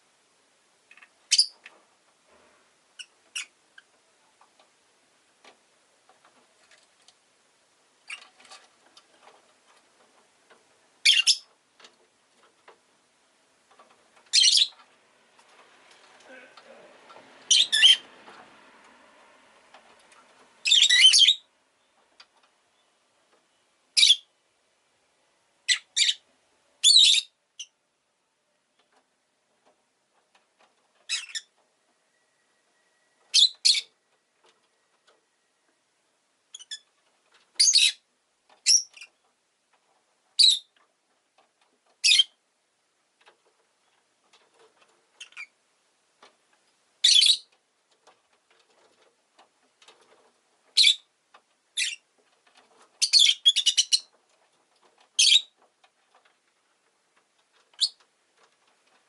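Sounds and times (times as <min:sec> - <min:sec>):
lovebird chirping: 0:00.9 - 0:01.6, 0:03.0 - 0:03.9, 0:11.0 - 0:11.5, 0:14.3 - 0:14.8, 0:17.5 - 0:18.1, 0:20.6 - 0:21.5, 0:24.0 - 0:24.3, 0:25.7 - 0:26.2, 0:26.8 - 0:27.8, 0:31.1 - 0:31.5, 0:32.1 - 0:34.0, 0:36.5 - 0:36.9, 0:37.6 - 0:38.0, 0:38.6 - 0:39.2, 0:40.4 - 0:40.7, 0:42.0 - 0:42.4, 0:47.0 - 0:47.5, 0:50.8 - 0:51.1, 0:51.8 - 0:52.0, 0:53.0 - 0:54.1, 0:55.2 - 0:55.6, 0:57.8 - 0:58.0.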